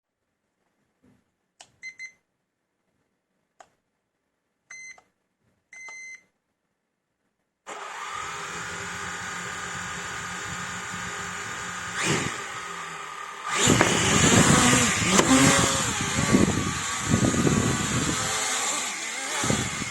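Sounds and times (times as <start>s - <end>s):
drone propellers whirring: 7.8s - 19.9s.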